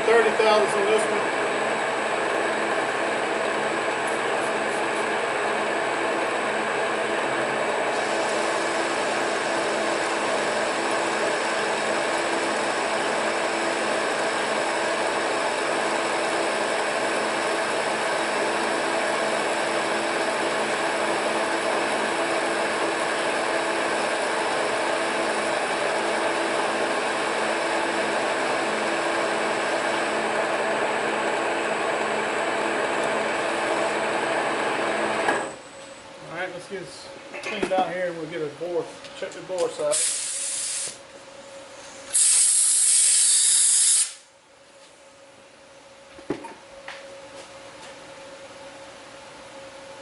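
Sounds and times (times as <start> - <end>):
lathe whirring with gear whine: 0.0 - 38.7.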